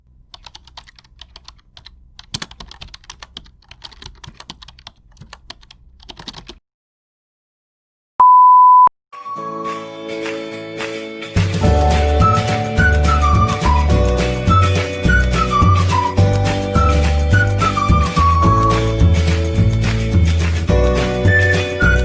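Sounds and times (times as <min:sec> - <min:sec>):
keyboard typing: 0:00.0 - 0:06.6
music: 0:09.2 - 0:22.0.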